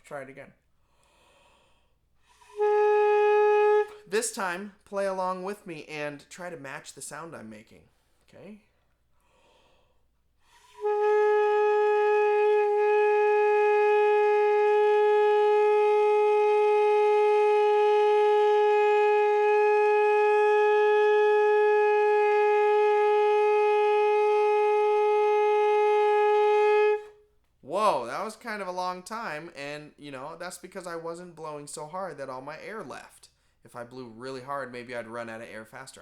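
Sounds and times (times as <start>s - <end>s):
alto saxophone long tone: 2.3s - 4.2s, 10.6s - 27.3s.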